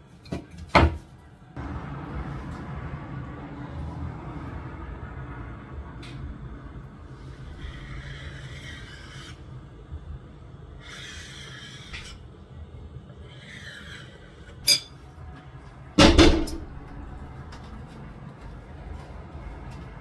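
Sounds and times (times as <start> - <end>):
loud clatter of knocks: 16.0 - 16.8.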